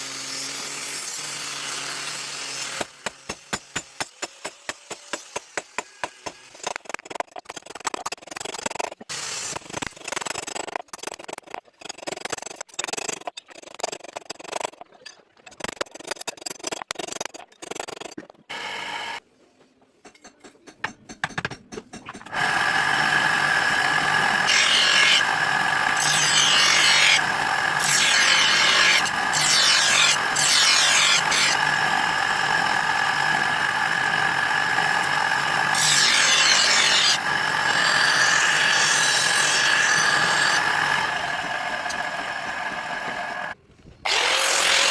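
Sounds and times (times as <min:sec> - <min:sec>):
power grinder whining: 0:18.5 - 0:19.2, 0:22.3 - 0:44.9.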